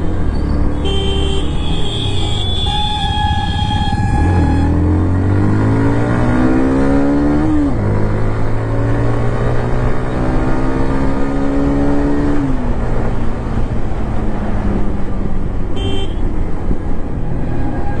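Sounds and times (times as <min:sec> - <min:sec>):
motorcycle engine accelerating: 0:02.6 - 0:13.3.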